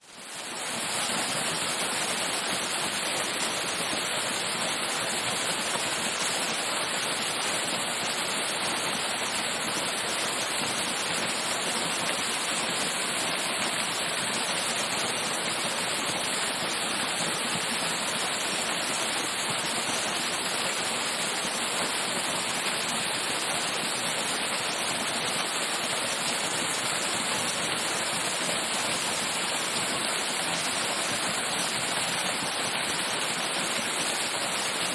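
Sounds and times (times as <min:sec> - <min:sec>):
waterfall rushing: 0:00.4 - 0:34.9.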